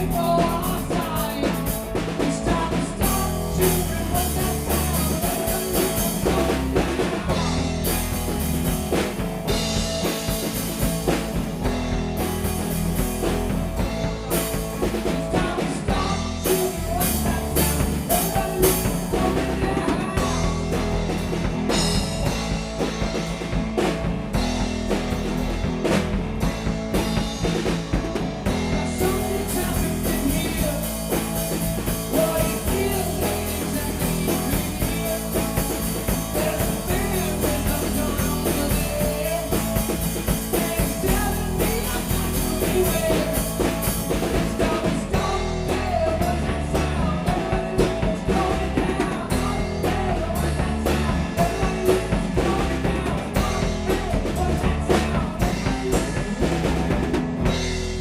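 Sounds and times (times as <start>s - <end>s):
person singing: 0.0s - 8.1s, 14.2s - 22.0s, 28.5s - 57.0s
drum kit: 0.0s - 58.0s
electric guitar: 0.0s - 58.0s.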